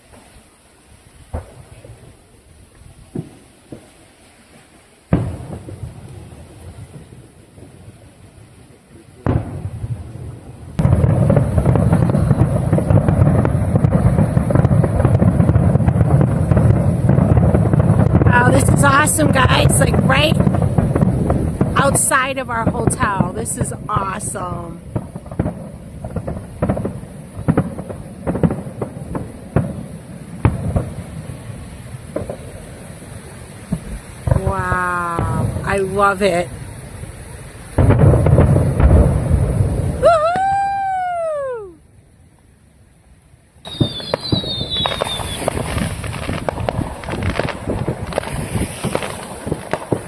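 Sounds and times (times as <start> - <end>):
fireworks bangs and booms: 0.0 - 41.5, 43.6 - 50.0
firework whistle: 37.8 - 41.9, 43.6 - 50.0.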